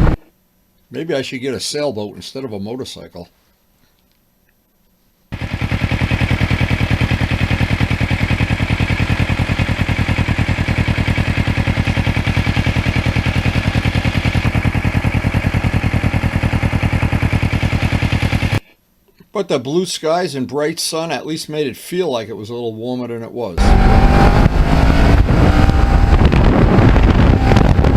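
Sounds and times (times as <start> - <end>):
motorcycle engine running: 5.4 - 18.6, 23.6 - 27.9.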